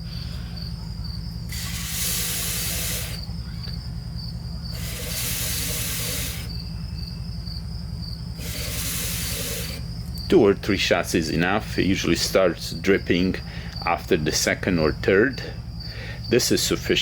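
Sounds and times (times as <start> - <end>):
aerosol can hissing: 1.5 - 3.3, 4.7 - 6.5, 8.4 - 9.8.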